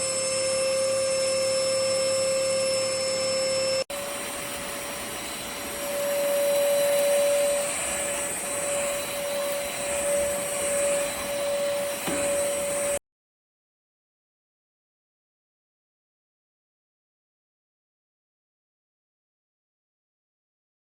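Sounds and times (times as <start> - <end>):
vacuum cleaner motor whine: 0.0 - 13.0.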